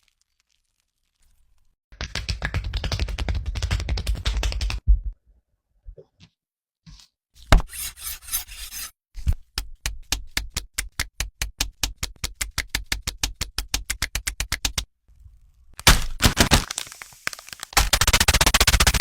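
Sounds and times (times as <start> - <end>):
crackling rustle: 16.1 - 17.9.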